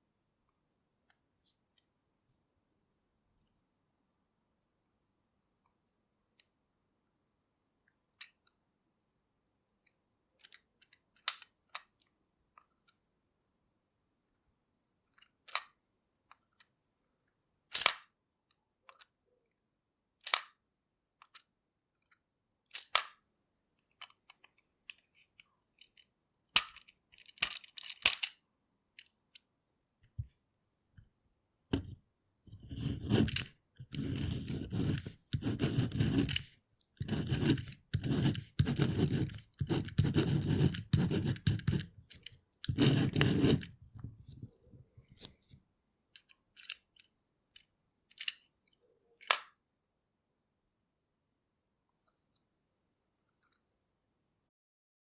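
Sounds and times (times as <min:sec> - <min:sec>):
pen scratching on paper: 0:31.7 - 0:44.5
pen clicks and taps: 0:31.7 - 0:45.4.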